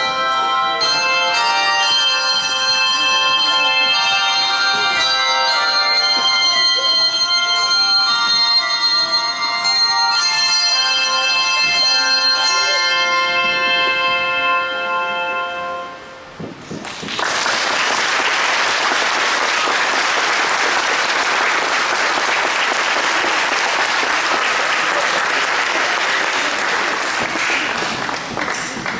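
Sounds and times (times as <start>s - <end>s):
audience applauding: 16.8s - 28.9s.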